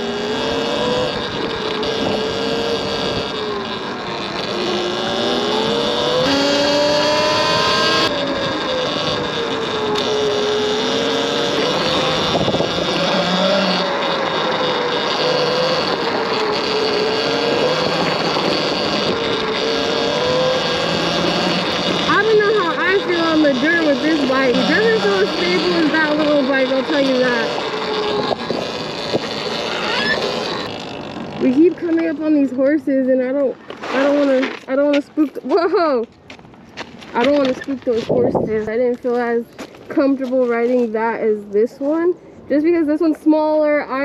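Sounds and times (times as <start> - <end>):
electric bike motor whining: 0.0 - 35.9
wind: 0.0 - 44.0
tyre noise on dirt: 33.5 - 41.2.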